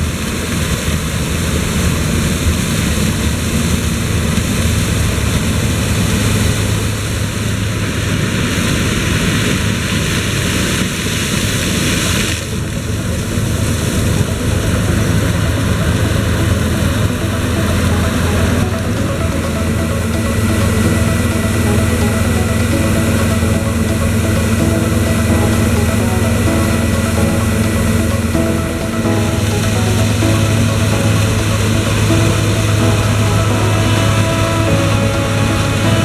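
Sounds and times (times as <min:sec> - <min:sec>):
combine harvester engine drone: 0:12.6 - 0:36.0.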